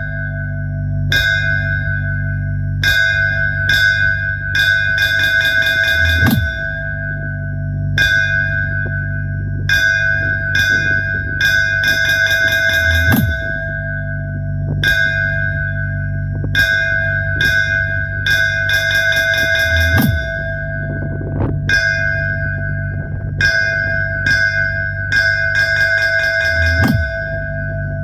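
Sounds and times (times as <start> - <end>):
bell-like chime: 0.0 - 28.0
deep sustained bass: 0.0 - 28.0.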